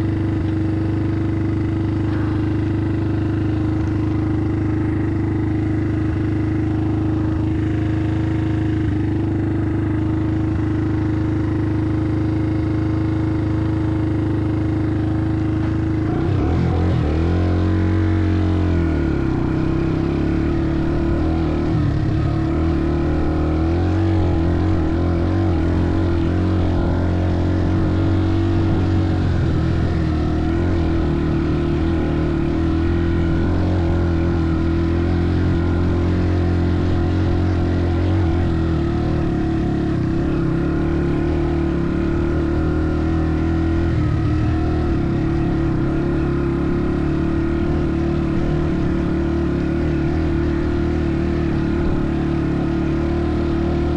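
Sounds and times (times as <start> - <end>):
engine running: 0.0 - 53.9.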